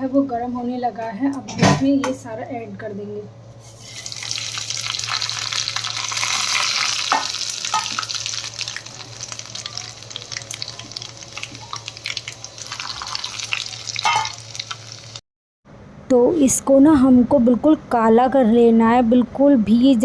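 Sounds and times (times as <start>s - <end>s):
seeds sizzling in hot oil: 3.6s - 15.2s.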